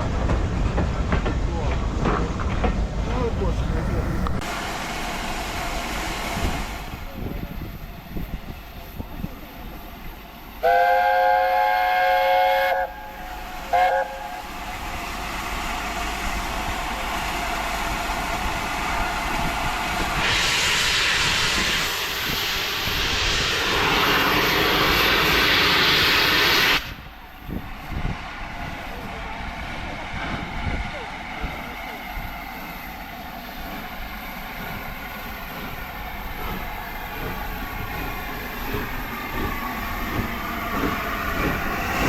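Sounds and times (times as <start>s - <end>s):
steam hissing: 3.1s - 42.0s
steam locomotive whistle: 10.6s - 14.5s.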